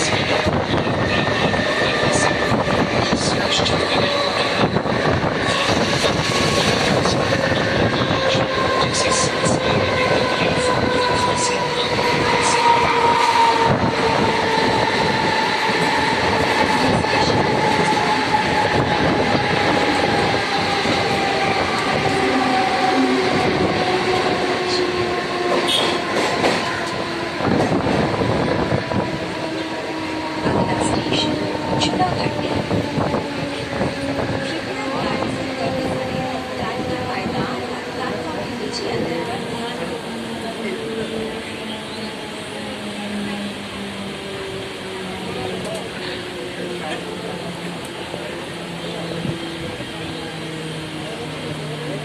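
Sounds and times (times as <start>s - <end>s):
train rumble and wheel clatter: 0.0s - 52.0s.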